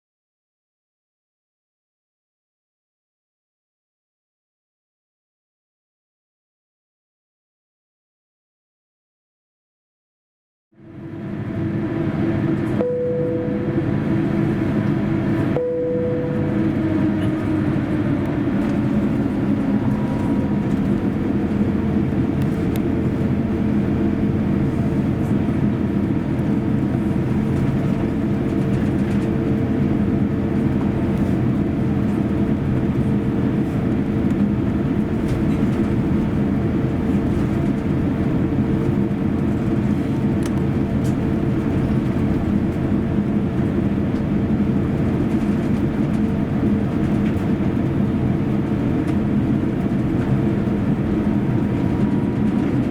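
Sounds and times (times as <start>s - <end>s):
jet engines heard inside cabin: 10.8s - 52.9s.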